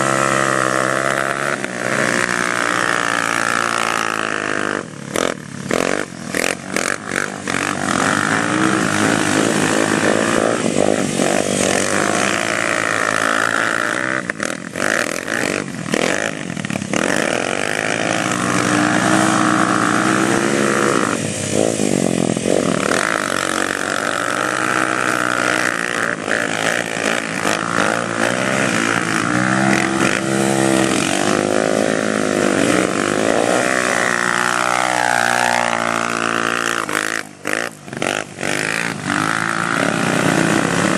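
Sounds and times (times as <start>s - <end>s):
atv engine revving: 0.0s - 40.9s.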